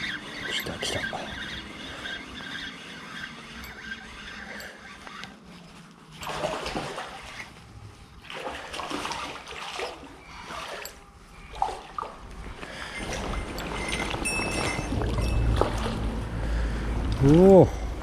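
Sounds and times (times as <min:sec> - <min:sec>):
fish splashing at water surface: 0:06.2 - 0:07.5, 0:08.2 - 0:16.2.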